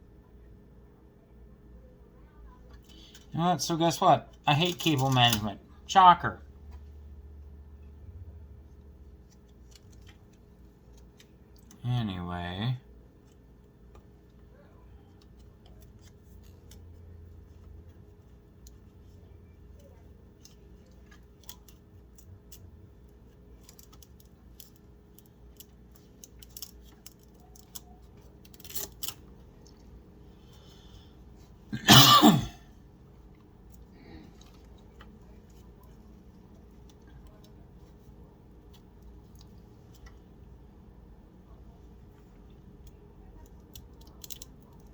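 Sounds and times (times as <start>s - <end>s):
plastic cable clicks and rattles: 23.6s - 29.8s, 42.8s - 44.9s
person coughing: 31.7s - 32.7s.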